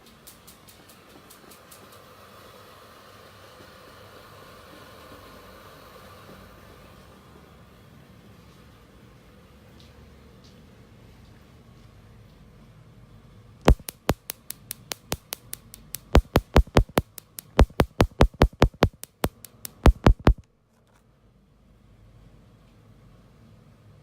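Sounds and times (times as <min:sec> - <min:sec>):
sharp loud clicks: 0:13.7 - 0:20.4.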